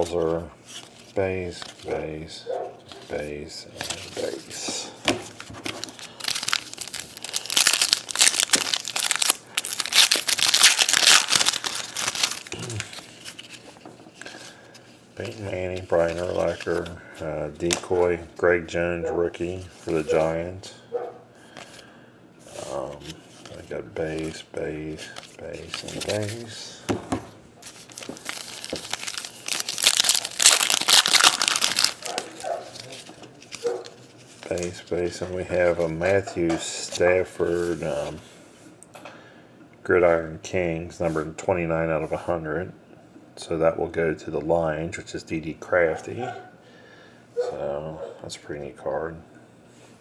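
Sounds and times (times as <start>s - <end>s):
cards rustling: 0.0s - 18.2s, 22.5s - 27.0s, 27.6s - 36.3s
foil wrapper tearing and crinkling: 5.7s - 13.6s, 27.6s - 34.7s.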